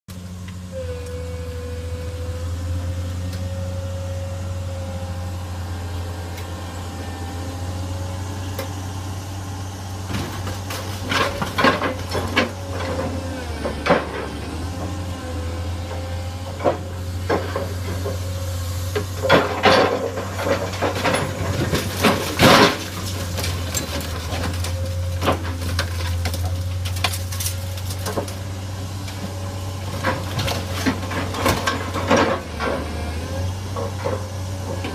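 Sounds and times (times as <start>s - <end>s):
hydraulic whine: 0.1s - 25.8s
diesel engine running: 0.1s - 34.9s
metal crunching and banging: 10.0s - 34.9s.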